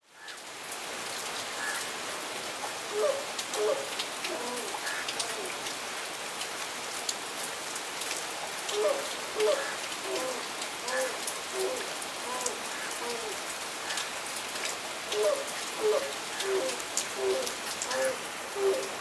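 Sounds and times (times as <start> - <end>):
steady background hiss: 0.4 - 6.2, 8.3 - 19.0
crane honking calls: 8.7 - 14.0, 15.1 - 19.0.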